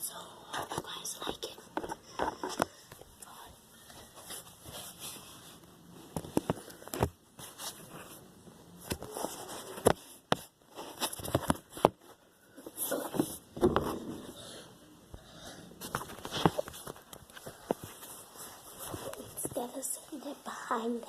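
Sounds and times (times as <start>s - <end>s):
objects being handled: 8.8s - 14.4s, 15.8s - 19.6s.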